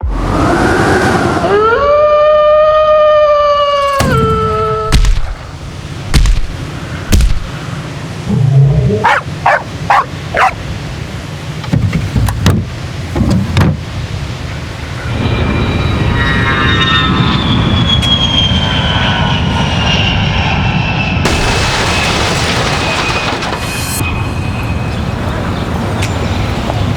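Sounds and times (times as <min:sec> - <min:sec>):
rumble with falling whine: 0:00.0 - 0:09.5, 0:12.7 - 0:25.8
dog yipping and barking: 0:08.9 - 0:10.6.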